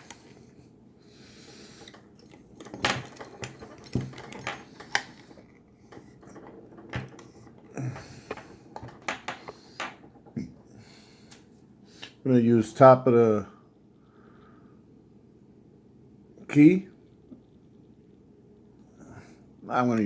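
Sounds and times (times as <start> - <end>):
metallic clicks of lock picking: 1.9 - 5.3.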